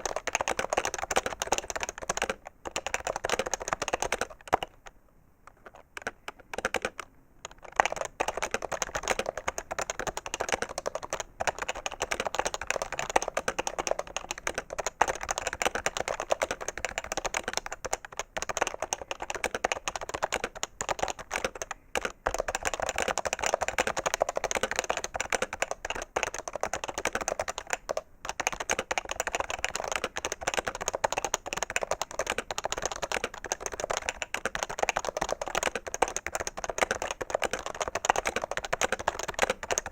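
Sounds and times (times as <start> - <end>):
fast keyboard typing: 0.0 - 4.9, 5.5 - 39.9.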